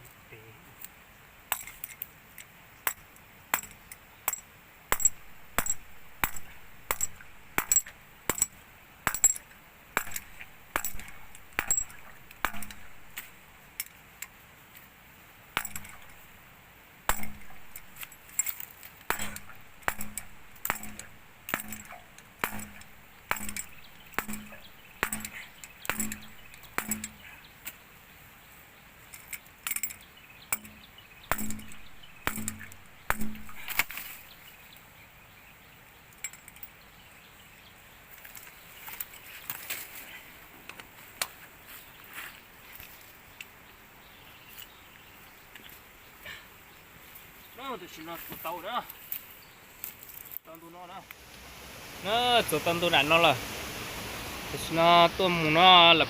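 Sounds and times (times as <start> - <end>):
sharp knocks with metallic clink: 1.5 - 2.0, 2.8 - 14.0, 15.6 - 16.3, 17.1 - 27.4, 29.2 - 34.3.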